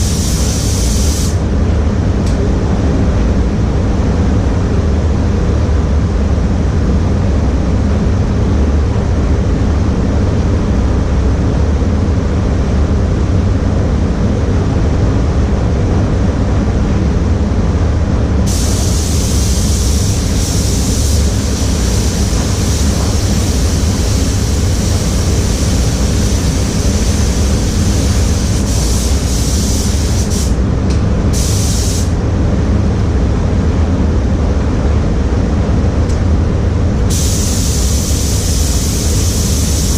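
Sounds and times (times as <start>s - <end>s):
spray gun hissing: 0.0s - 1.4s, 18.5s - 30.6s, 31.3s - 32.2s, 37.1s - 39.9s
air system low rumble: 0.0s - 39.9s.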